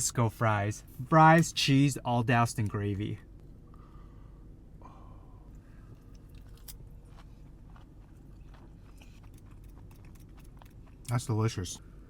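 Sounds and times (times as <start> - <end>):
person chewing wetly: 5.5 - 11.2.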